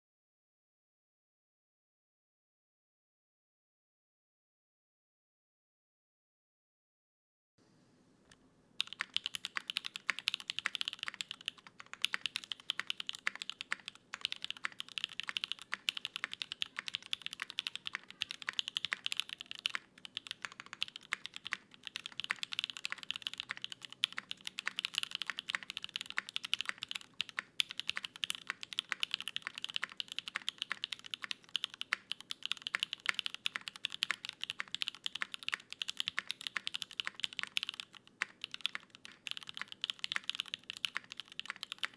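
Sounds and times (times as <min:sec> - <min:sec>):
mechanical keyboard typing: 0:08.8 - 0:41.9.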